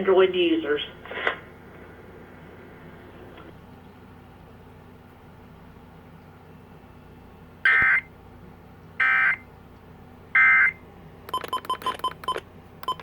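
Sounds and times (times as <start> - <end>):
short electronic beeps: 10.4 - 13.0.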